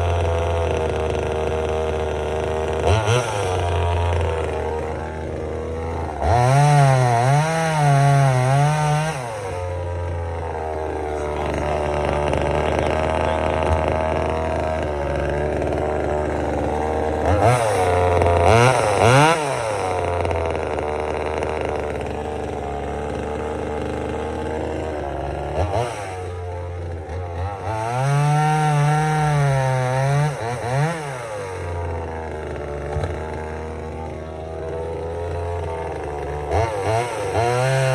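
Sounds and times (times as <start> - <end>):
chainsaw idling and revving: 0.0 - 37.9.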